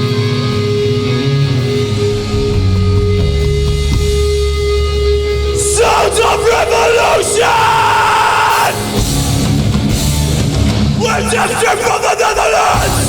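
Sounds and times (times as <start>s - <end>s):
sustained guitar and bass notes: 0.0s - 12.1s
person yelling: 5.6s - 9.0s, 11.0s - 13.0s.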